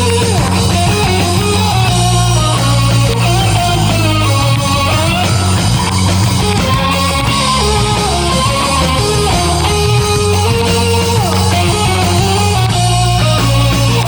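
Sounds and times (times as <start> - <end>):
bass: 0.0 - 14.0
drum kit: 0.0 - 14.0
electric guitar: 0.0 - 14.0.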